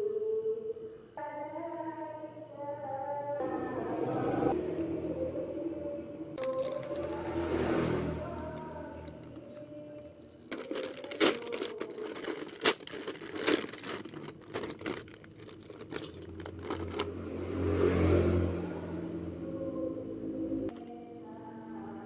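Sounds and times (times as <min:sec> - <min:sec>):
irregular crackling and clicking: 0:06.4 - 0:07.2, 0:08.2 - 0:17.1.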